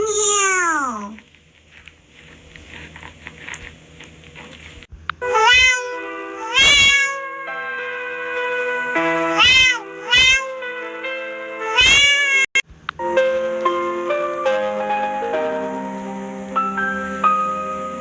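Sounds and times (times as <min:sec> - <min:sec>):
music with long held notes: 0:05.2 - 0:11.8, 0:12.9 - 0:18.0
cat meowing loudly: 0:05.3 - 0:07.2, 0:09.3 - 0:10.6, 0:11.6 - 0:12.6.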